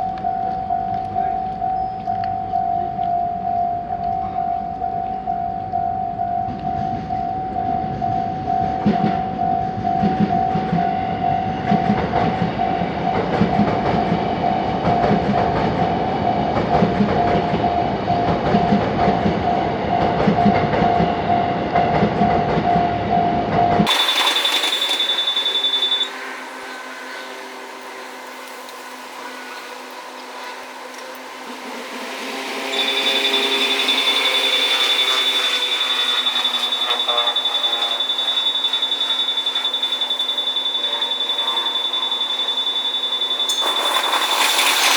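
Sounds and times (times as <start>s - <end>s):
level crossing warning bell: 0.0s - 13.7s, 23.9s - 44.9s
high beeping: 23.9s - 29.8s, 31.6s - 44.9s.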